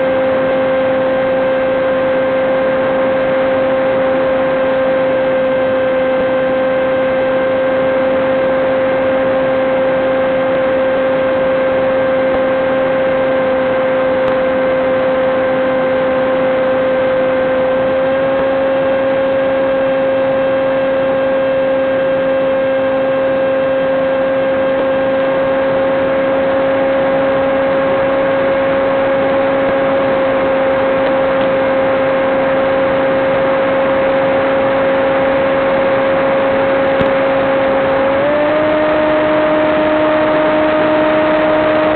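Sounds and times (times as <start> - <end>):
electric motor and propeller whine: 0.0 - 41.9.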